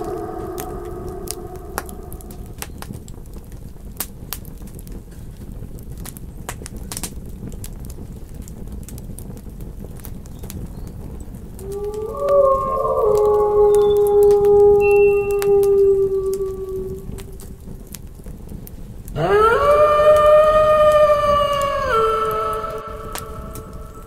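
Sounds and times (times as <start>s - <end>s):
wolf howl: 0.0s - 2.9s, 11.6s - 17.9s, 19.2s - 24.0s
campfire crackling and popping: 0.0s - 24.0s
low rumble of flames: 0.0s - 24.0s.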